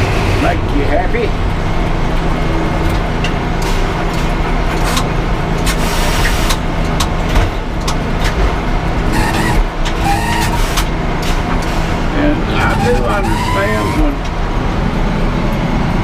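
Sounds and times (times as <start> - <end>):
sharp clicks and knocks: 1.4 - 11.7
sawmill engine running: 8.0 - 16.0.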